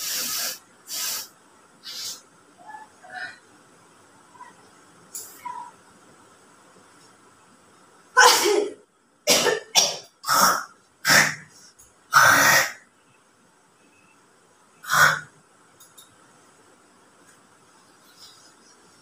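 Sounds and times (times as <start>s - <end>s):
person sneezing: 8.2s - 8.7s.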